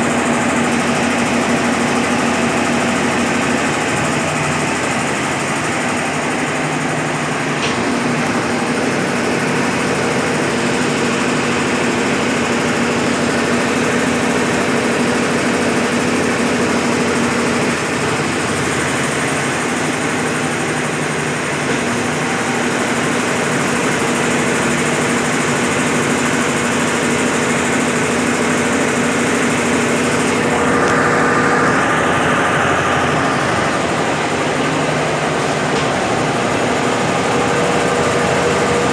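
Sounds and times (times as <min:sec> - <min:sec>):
washing machine spinning: 0:00.0 - 0:38.9.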